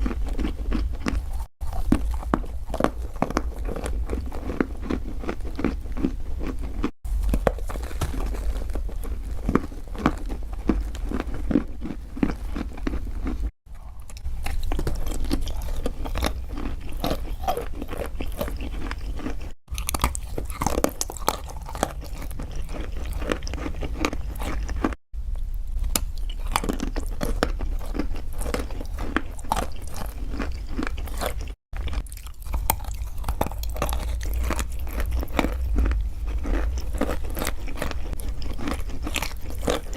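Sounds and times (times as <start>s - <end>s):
person chewing crisp food: 0.0s - 39.9s
low hum: 32.4s - 39.5s.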